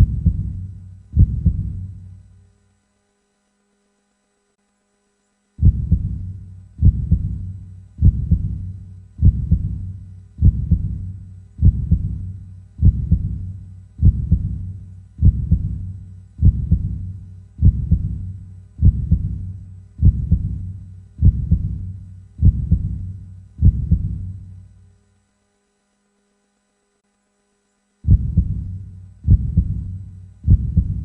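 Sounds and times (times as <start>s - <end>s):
slow heartbeat thumps: 0.0s - 2.1s, 5.6s - 24.6s, 28.0s - 31.0s.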